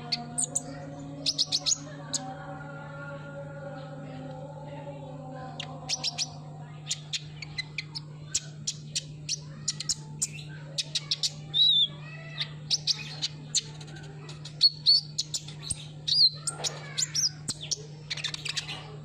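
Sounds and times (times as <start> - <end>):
bird chirping and whistling: 0.0 - 2.2, 5.9 - 13.8, 14.6 - 18.8
steady low hum: 0.0 - 19.0.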